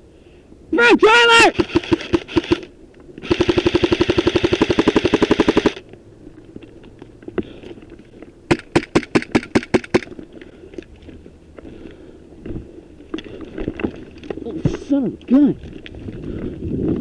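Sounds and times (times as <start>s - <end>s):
airsoft gun full-auto burst: 1.3s - 5.8s, 8.5s - 10.2s
airsoft gun single shots: 1.6s - 5.8s, 8.5s - 10.1s.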